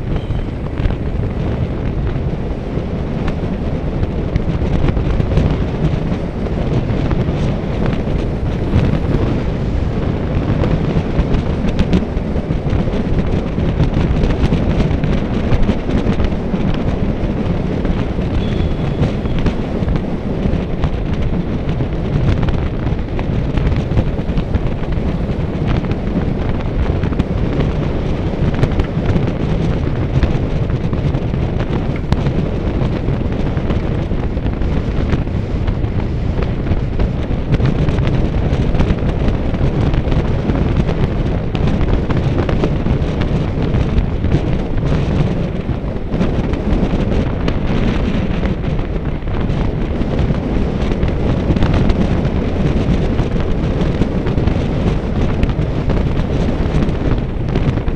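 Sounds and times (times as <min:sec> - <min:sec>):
wind buffeting microphone: 0:00.0 - 0:57.9.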